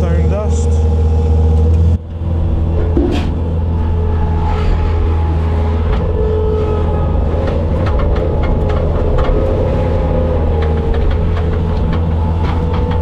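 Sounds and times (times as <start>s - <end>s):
diesel engine running: 0.0s - 13.0s
high whine: 2.0s - 7.9s
light clanks and knocks: 2.7s - 3.8s.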